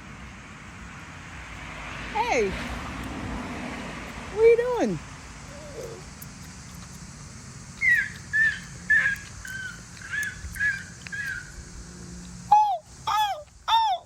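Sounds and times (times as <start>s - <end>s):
person imitating bird calls: 5.5s - 6.1s, 12.5s - 14.0s.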